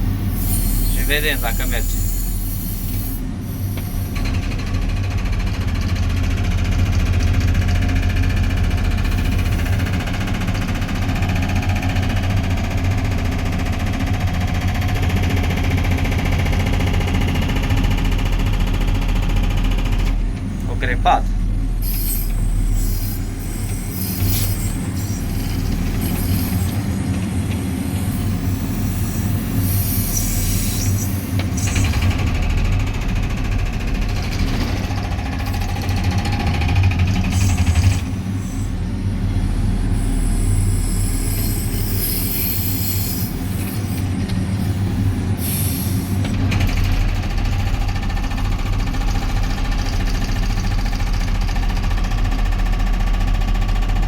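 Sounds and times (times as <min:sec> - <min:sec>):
diesel engine running: 0:00.0 - 0:54.0.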